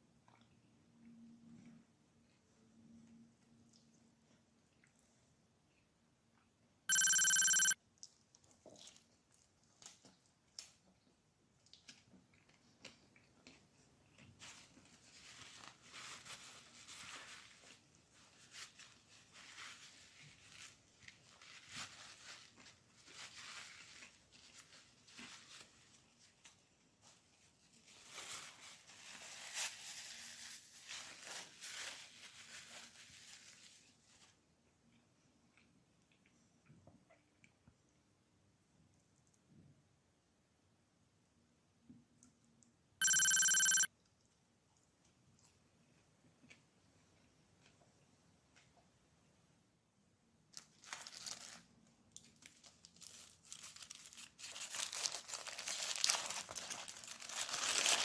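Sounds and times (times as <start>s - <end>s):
electronic ringing tone: 6.9s - 7.8s, 43.0s - 43.9s
paper wrapper rustling: 50.8s - 51.7s, 52.4s - 58.0s.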